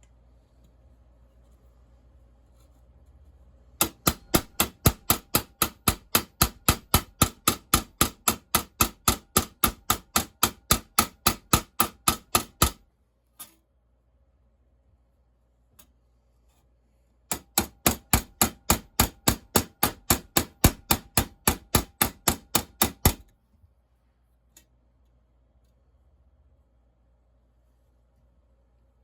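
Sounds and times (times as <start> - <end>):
hammer striking rivets: 3.8 - 12.8, 17.3 - 23.3.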